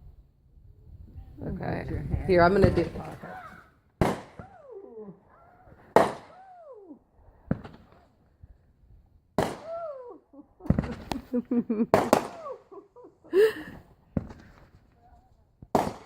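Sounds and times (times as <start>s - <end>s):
crackling firework pops: 4.0s - 4.6s, 5.9s - 6.4s, 7.5s - 8.1s, 9.4s - 9.8s, 11.9s - 12.5s, 14.2s - 14.9s, 15.6s - 16.0s
firework bangs: 4.0s - 4.6s, 5.8s - 6.5s, 9.4s - 10.0s, 10.6s - 11.2s, 11.9s - 12.6s, 15.7s - 16.0s.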